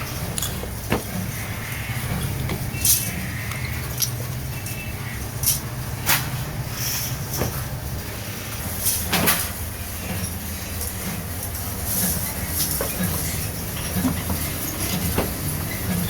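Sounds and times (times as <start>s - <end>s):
metal knocks and clanks: 0.0s - 4.4s
machinery humming: 0.0s - 16.0s.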